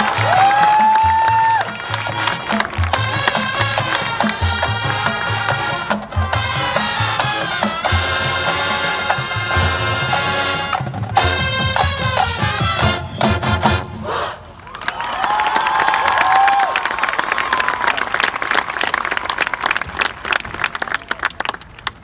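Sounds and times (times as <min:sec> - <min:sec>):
brass chords: 0:01.6 - 0:14.4.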